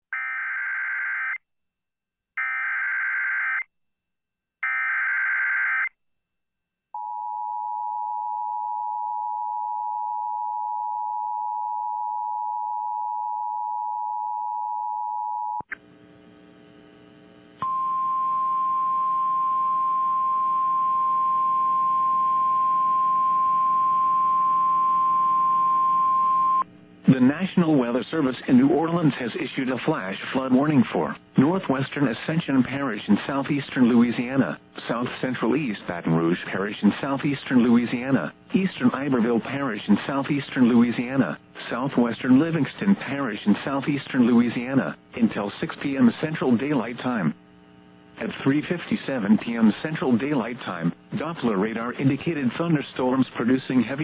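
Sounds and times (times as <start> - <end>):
single-tone warning alarm: 4.6 - 5.9
radio hiss: 29.2 - 47.4.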